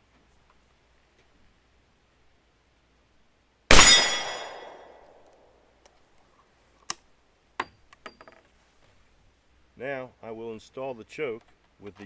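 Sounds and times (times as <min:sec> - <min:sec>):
rifle gunshot with ringing tail: 0:03.7 - 0:04.9.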